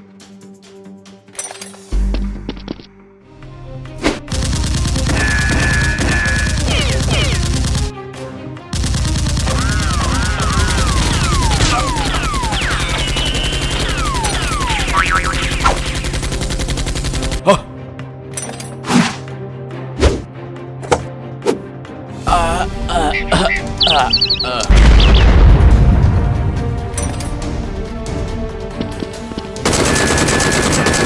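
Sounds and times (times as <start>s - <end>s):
rapid automatic gunfire: 4.3s - 7.9s, 8.7s - 17.4s, 29.6s - 31.0s.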